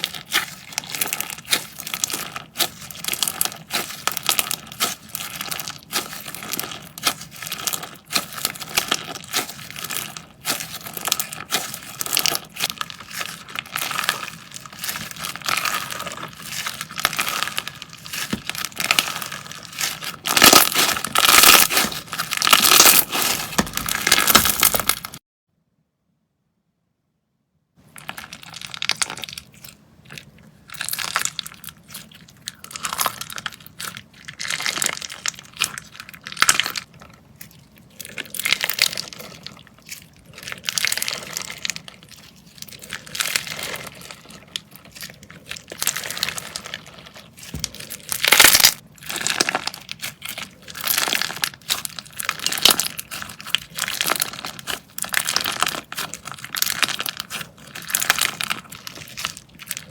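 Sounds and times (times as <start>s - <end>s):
slime crackling when squeezed: 0.0s - 25.2s, 37.6s - 59.9s.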